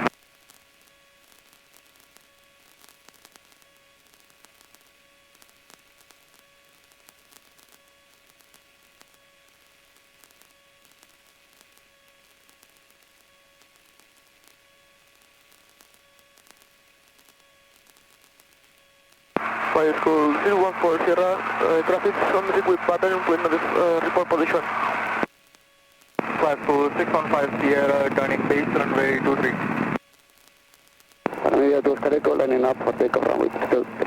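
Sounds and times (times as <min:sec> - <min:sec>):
faint static hiss: 0:00.0 - 0:34.0
light crackle: 0:00.0 - 0:34.0
faint hum tone: 0:18.8 - 0:30.0.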